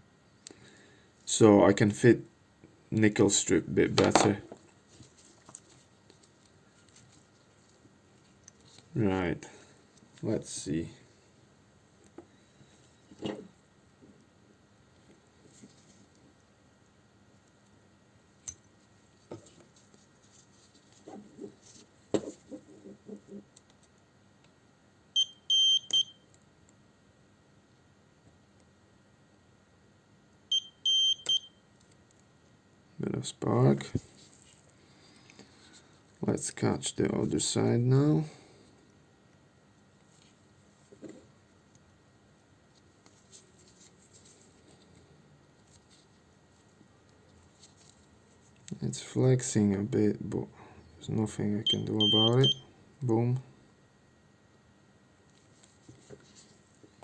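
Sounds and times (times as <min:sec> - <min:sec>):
spot welder beeping: 0:51.7 - 0:52.7.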